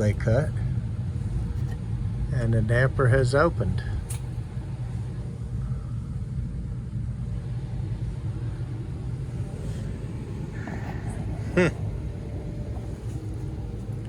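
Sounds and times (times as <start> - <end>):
furnace blower rumbling: 0.0 - 14.0.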